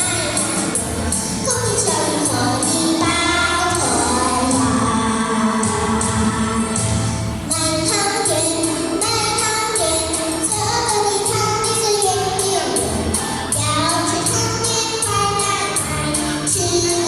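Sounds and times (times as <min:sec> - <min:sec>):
music with steady beat: 0:00.0 - 0:17.0
person singing: 0:01.5 - 0:11.0.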